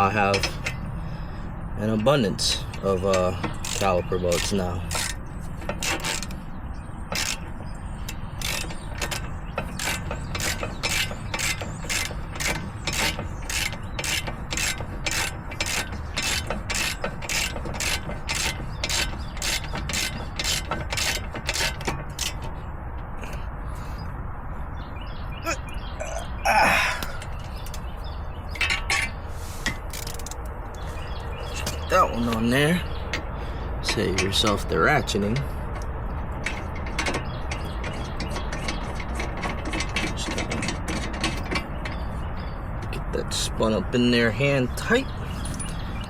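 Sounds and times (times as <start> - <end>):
socket ratchet clicking: 7.1 - 22.5, 28.6 - 30.6.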